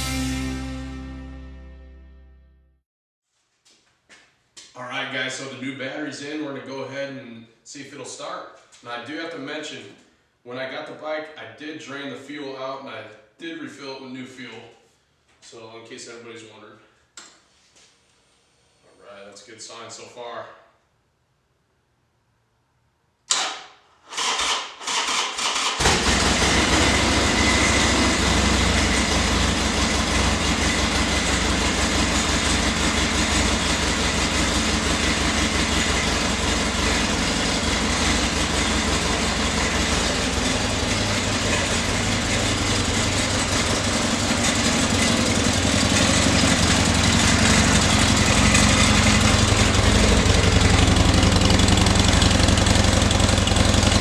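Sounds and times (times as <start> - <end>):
motorcycle engine running: 0.0 - 1.7, 25.8 - 54.0.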